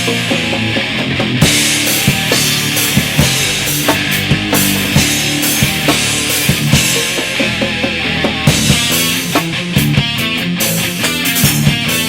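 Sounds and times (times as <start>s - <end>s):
rock band playing live: 0.0s - 12.0s
drum hits: 2.0s - 7.5s.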